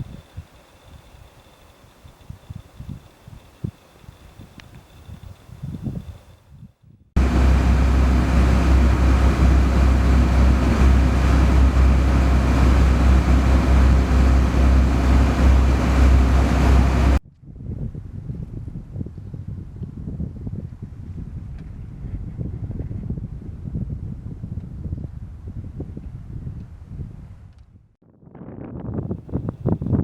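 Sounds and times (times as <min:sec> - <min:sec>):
deep rumble with hiss: 0:07.2 - 0:17.2.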